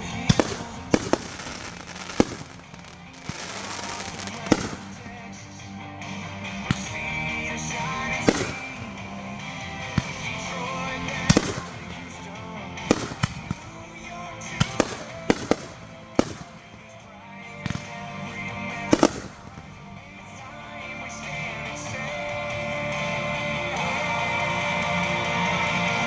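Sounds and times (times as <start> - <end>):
fireworks banging: 0.0 - 20.6
background music: 0.0 - 26.0.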